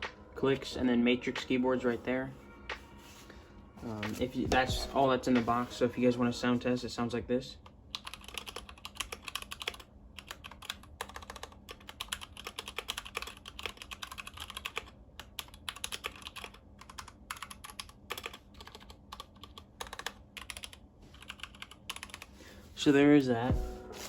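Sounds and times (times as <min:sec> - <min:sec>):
mechanical keyboard typing: 0:07.9 - 0:22.3.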